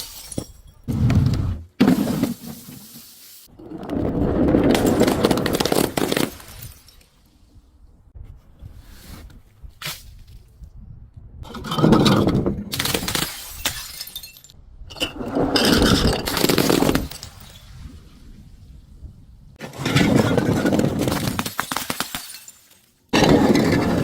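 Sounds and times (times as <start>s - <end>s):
glass bottle crushing and shattering: 0.0s - 0.9s, 4.6s - 7.3s, 11.6s - 17.7s, 19.7s - 24.0s.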